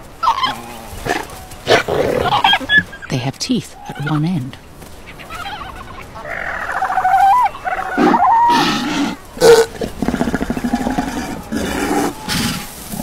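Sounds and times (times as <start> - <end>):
seals calling: 0.0 - 13.0
seal low pulsing growl: 7.7 - 13.0.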